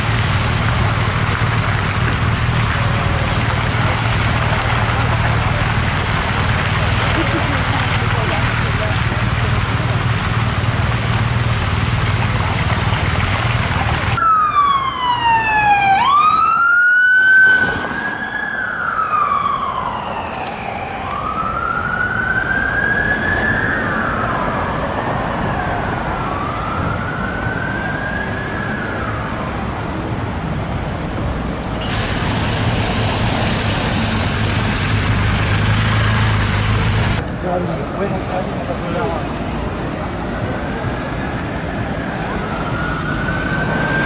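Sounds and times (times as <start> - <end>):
low vehicle rumble: 0.0 - 14.7, 30.1 - 44.0
police siren wailing: 14.2 - 29.9, 41.2 - 44.0.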